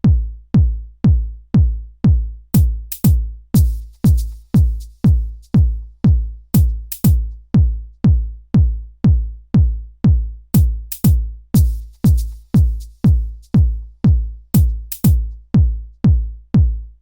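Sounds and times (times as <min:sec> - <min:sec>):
deep kick drum: 0:00.0 - 0:17.0
electronic dance music: 0:02.6 - 0:05.8, 0:10.9 - 0:13.8.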